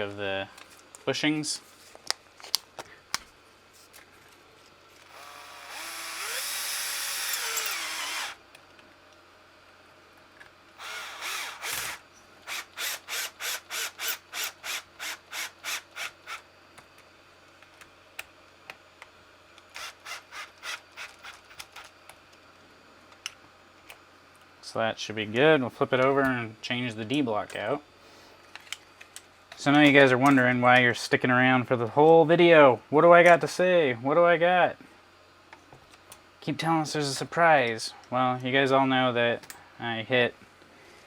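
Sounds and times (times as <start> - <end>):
power screwdriver spinning: 5.0 - 8.4, 10.8 - 16.4, 19.8 - 21.9.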